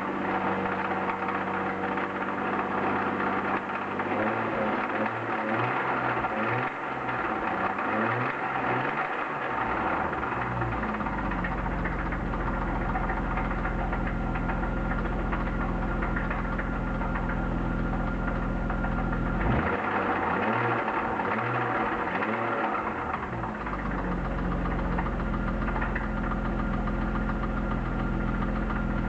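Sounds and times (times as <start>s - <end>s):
car engine running: 0.0s - 29.0s
rhythmic engine knocking: 0.2s - 19.5s, 20.5s - 29.0s.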